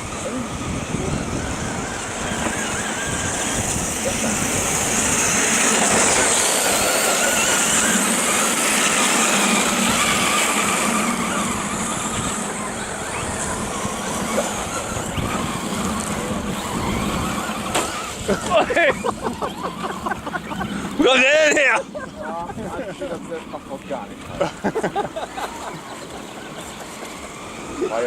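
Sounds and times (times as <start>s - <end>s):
electric motors whining: 0.0s - 28.0s
tyres hissing on gravel: 1.9s - 12.6s.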